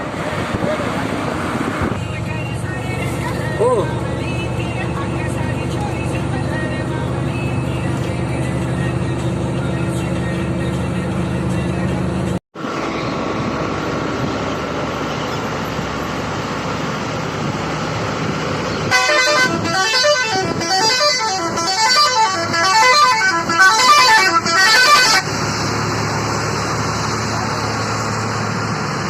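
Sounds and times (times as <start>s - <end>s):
vehicle running noise: 0.0s - 29.0s
musical truck horn: 18.8s - 25.3s.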